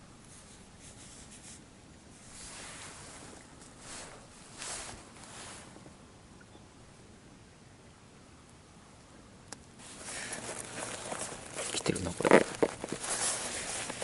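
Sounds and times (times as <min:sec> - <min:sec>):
soft rustling and rubbing: 0:00.2 - 0:06.0, 0:09.8 - 0:14.0.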